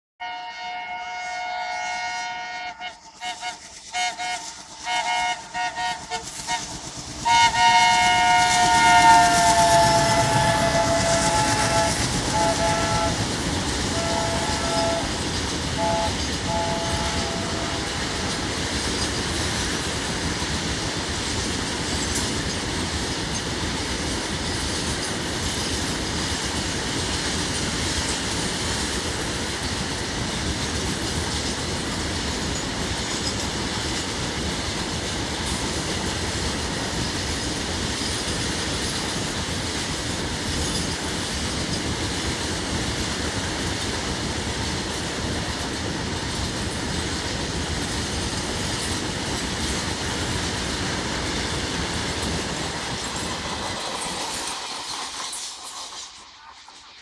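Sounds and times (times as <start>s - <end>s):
locomotive horn blasts: 0.2s - 18.2s
train running past: 0.2s - 57.0s.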